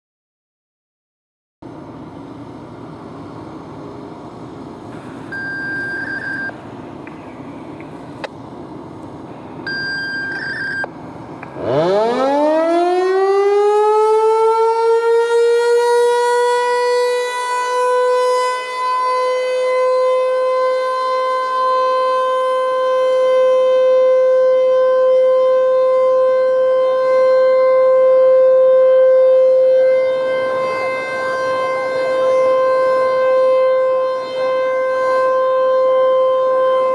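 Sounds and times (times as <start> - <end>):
background noise: 1.6 - 17.0
short electronic beeps: 5.3 - 6.6, 9.7 - 10.9
outdoor warning siren winding up: 9.7 - 36.9.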